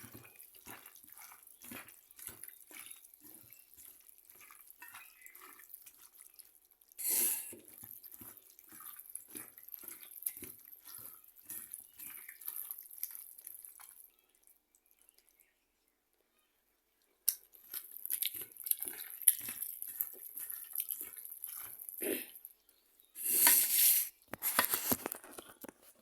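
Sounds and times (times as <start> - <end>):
water dripping and splashing: 0.0 - 15.4, 17.3 - 22.6.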